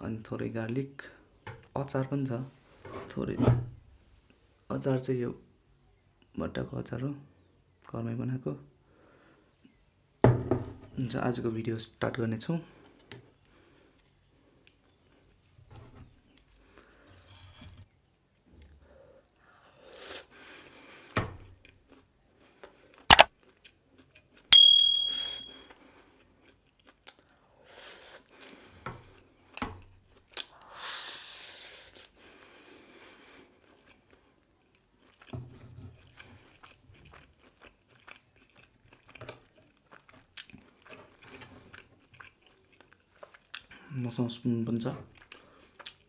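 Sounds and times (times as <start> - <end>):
sharp clicks: 24.6 - 25.5
chewing and crunching: 33.5 - 43.8, 45.0 - 46.0.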